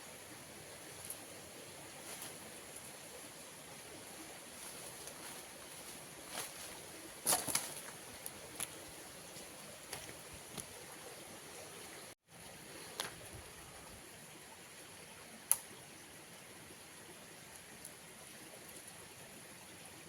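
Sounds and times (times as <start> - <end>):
running stream: 0.0 - 20.0.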